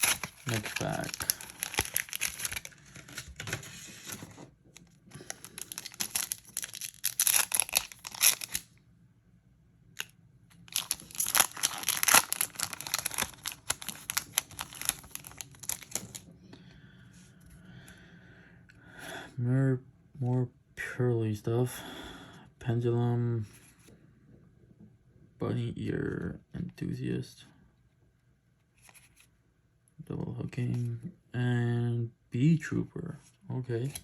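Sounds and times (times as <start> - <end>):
foil wrapper tearing and crinkling: 0.0 - 4.2, 5.1 - 8.6, 10.7 - 16.2.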